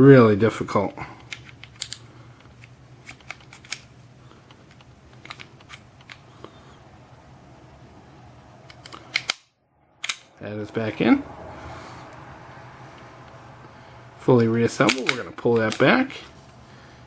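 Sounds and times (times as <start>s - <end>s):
steady low hum: 0.0s - 17.0s
pistol parts clicking and tapping: 1.2s - 6.2s, 8.7s - 9.4s, 14.8s - 15.9s.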